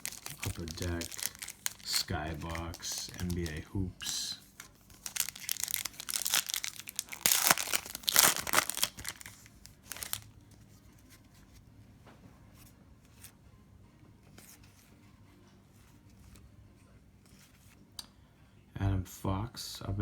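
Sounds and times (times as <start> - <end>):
wrapper tearing and crinkling: 0.0 - 10.3.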